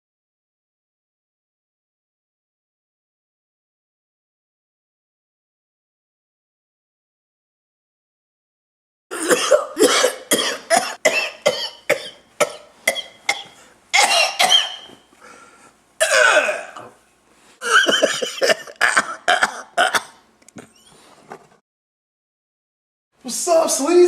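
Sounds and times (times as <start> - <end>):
person coughing: 9.1 - 15.0, 16.0 - 17.0, 17.6 - 20.2.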